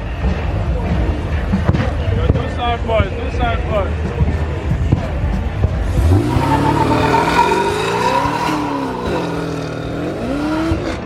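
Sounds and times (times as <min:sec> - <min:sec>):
car engine revving: 0:05.4 - 0:11.0
tyre squeal: 0:06.1 - 0:09.6.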